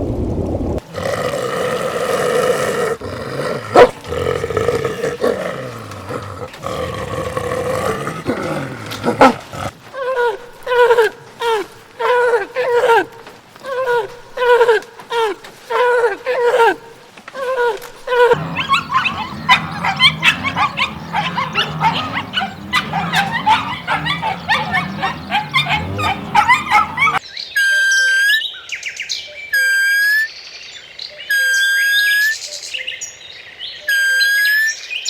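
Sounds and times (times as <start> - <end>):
birds chirping: 1.0 - 9.7, 18.1 - 27.3
long high bird call: 18.3 - 28.2.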